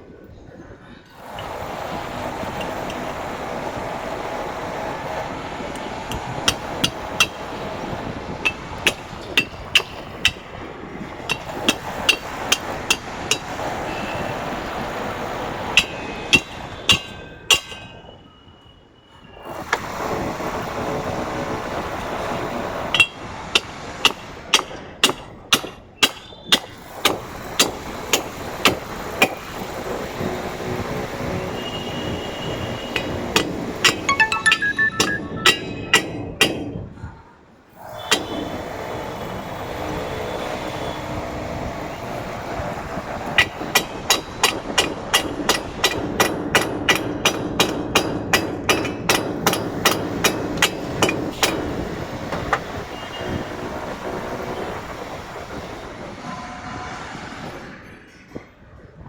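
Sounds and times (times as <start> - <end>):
hammer blows: 32.6 - 36.8.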